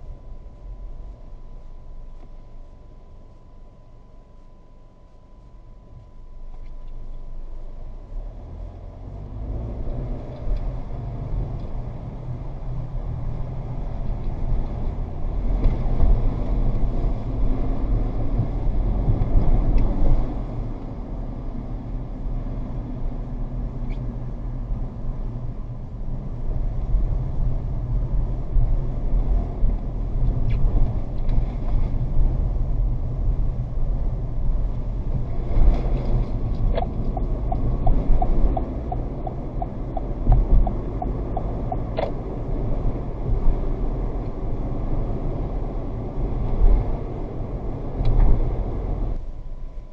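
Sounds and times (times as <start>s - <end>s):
car road and engine rumble: 0.0s - 49.9s.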